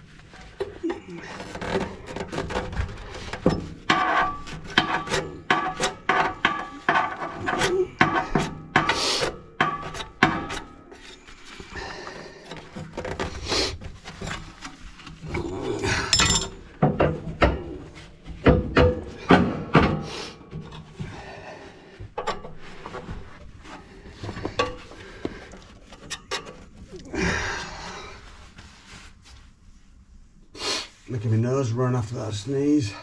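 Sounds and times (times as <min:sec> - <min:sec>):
metal grate parts scraping and knocking: 0:00.4 - 0:11.2, 0:15.9 - 0:21.0.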